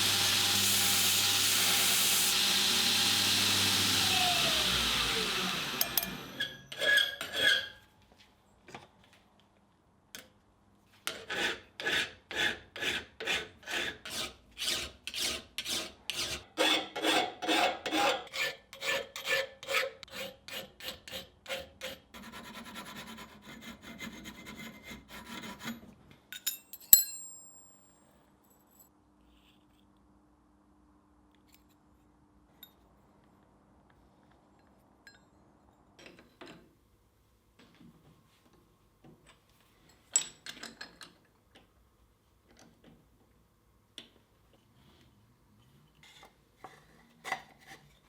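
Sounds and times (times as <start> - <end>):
hand file rasping on steel: 11.1 - 25.9.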